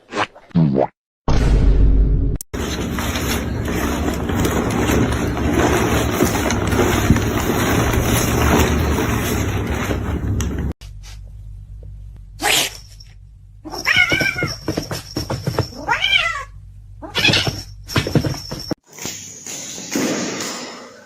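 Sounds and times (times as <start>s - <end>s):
cat yowling: 13.6s - 14.6s, 15.7s - 17.4s.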